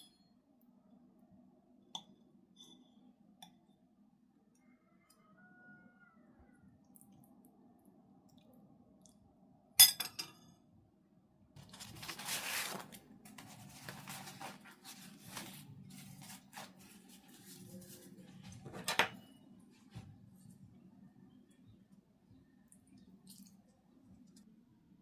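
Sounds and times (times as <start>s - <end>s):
tableware clinking: 9.8s - 10.5s, 18.8s - 19.4s
soft handling noise: 11.6s - 20.8s.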